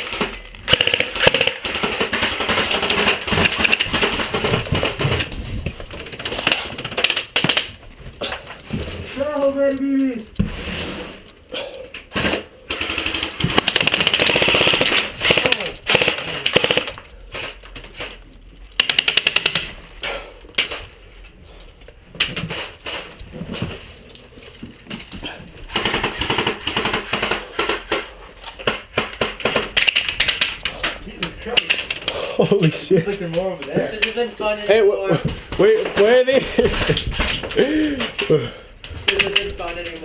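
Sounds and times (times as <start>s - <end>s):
airsoft guns firing full-auto: 0.0s - 5.0s, 12.7s - 17.0s, 18.8s - 19.8s, 25.7s - 28.0s
sharp single shots and clicks: 0.6s - 3.9s, 13.5s - 17.0s.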